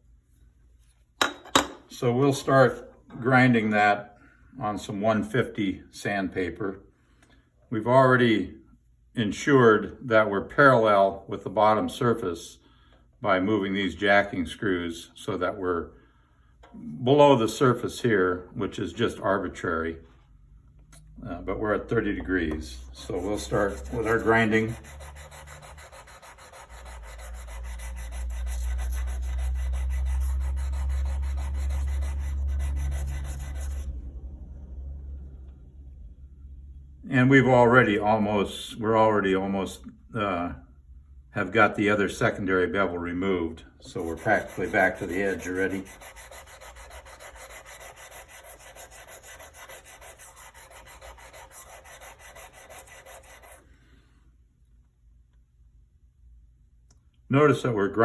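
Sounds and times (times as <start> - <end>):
blade scraping on sandpaper: 23.0 - 33.9, 44.0 - 53.7.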